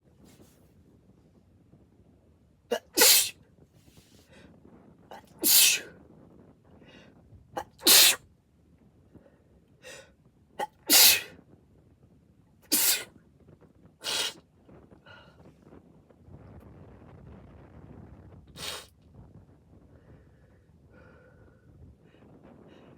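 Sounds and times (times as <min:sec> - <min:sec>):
person sneezing: 0:02.7 - 0:03.4, 0:05.2 - 0:05.9, 0:07.6 - 0:08.2, 0:10.6 - 0:11.3, 0:12.7 - 0:13.1, 0:14.0 - 0:14.4, 0:18.6 - 0:18.9
sharp catch of breath: 0:12.7 - 0:13.1.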